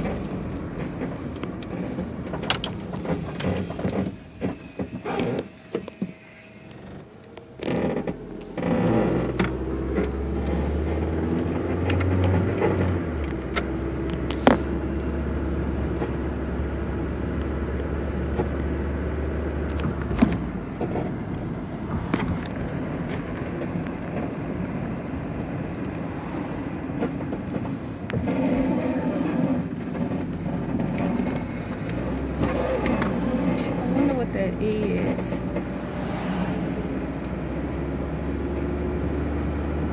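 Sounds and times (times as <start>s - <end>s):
low drone: 0.0s - 12.3s.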